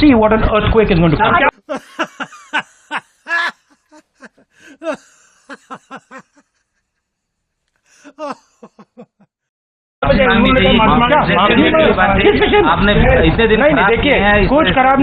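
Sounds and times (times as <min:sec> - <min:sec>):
person laughing: 0:01.6 - 0:06.9, 0:07.8 - 0:09.3.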